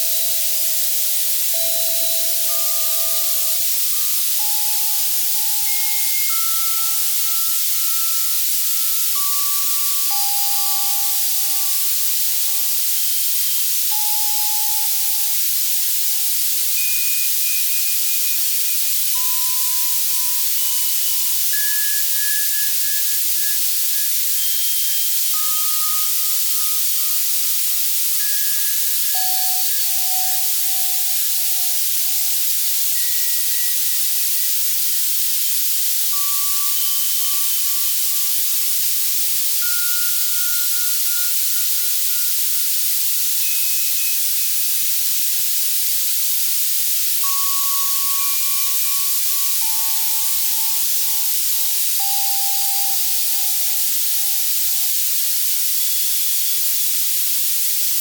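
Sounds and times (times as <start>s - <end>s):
soft synthesized bell tones: 0.0s - 12.0s
synthesized white noise hiss: 0.0s - 58.0s.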